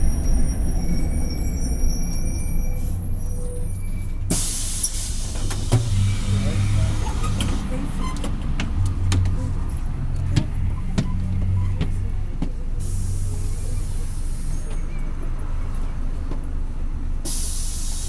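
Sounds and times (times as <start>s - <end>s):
bus body rattling: 0.0s - 15.4s
bus diesel engine drone: 0.0s - 18.0s
air hiss: 4.3s - 6.4s, 17.3s - 18.0s.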